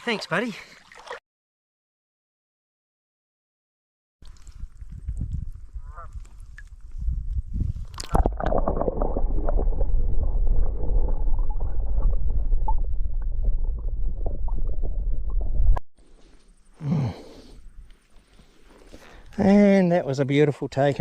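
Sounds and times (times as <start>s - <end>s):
uneven low rumble: 8.4s - 15.8s.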